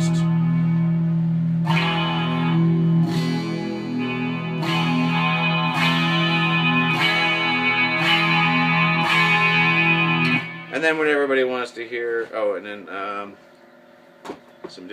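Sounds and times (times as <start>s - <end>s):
electric guitar chords strummed: 0.0s - 11.5s.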